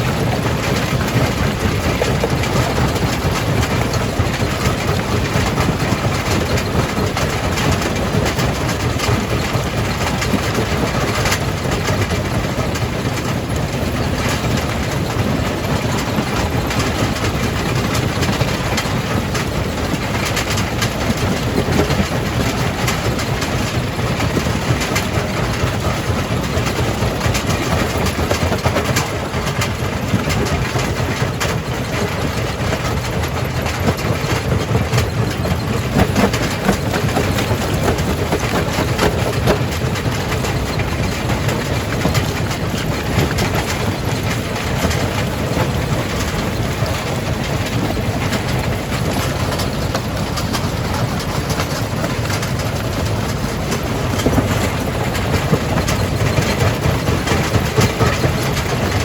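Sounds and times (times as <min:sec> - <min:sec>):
jaw crusher rumbling: 0:32.3 - 0:59.0.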